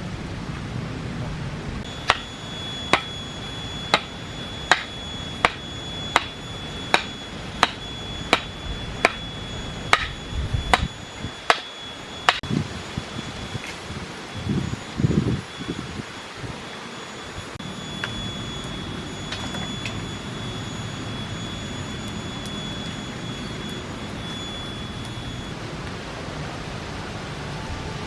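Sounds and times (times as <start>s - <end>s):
blade chopping on a board: 9.9s - 10.9s.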